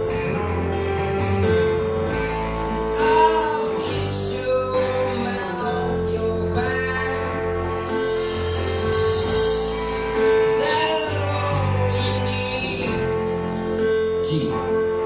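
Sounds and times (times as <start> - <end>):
guitar accompaniment: 0.0 - 15.0
person singing long notes: 3.0 - 8.2, 10.4 - 14.8.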